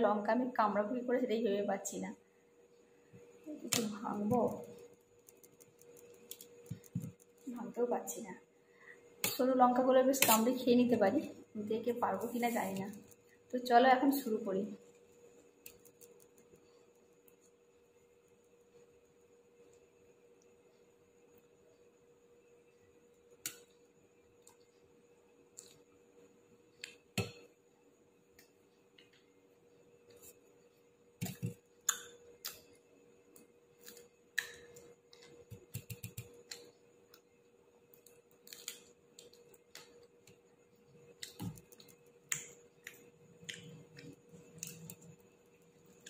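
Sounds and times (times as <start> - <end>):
faint steady hum: 0.0 - 46.0.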